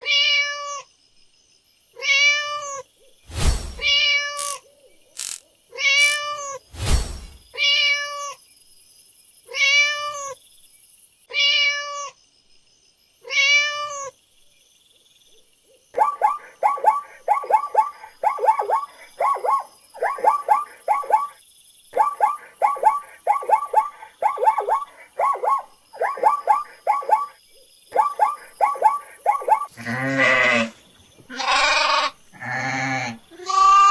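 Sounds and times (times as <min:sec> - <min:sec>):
cat meowing: 0:00.0 - 0:00.8, 0:02.0 - 0:02.8, 0:05.7 - 0:06.6, 0:09.5 - 0:10.4, 0:11.3 - 0:12.2, 0:13.2 - 0:14.1, 0:31.3 - 0:32.1
high-pitched chirping calls: 0:03.8 - 0:06.6, 0:16.0 - 0:29.8.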